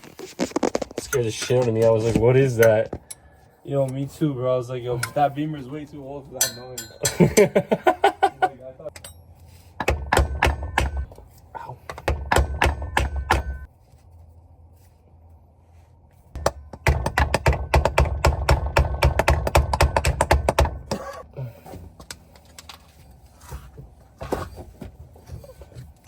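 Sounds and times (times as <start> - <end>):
impact wrench hammering: 6.4 - 7.5, 9.8 - 11.2, 11.9 - 13.7, 16.4 - 21.0.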